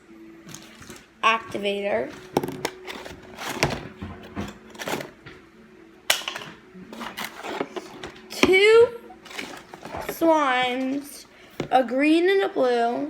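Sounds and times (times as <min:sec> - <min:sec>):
plastic containers clicking and knocking: 0:02.1 - 0:05.3.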